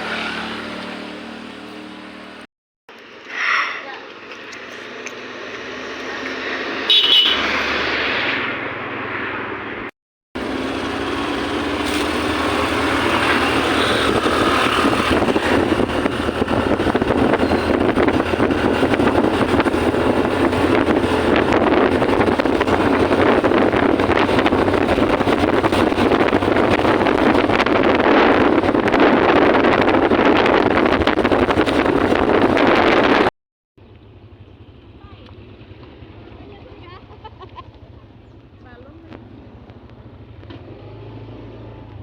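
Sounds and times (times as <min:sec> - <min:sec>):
engine running: 0:10.4 - 0:42.0
wind rushing on microphone: 0:11.7 - 0:33.3.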